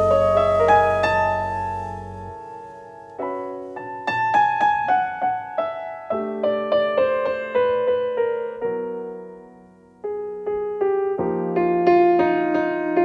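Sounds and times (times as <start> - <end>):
held chord over low bass: 0.0 - 2.4
solo jazz piano: 0.0 - 13.0.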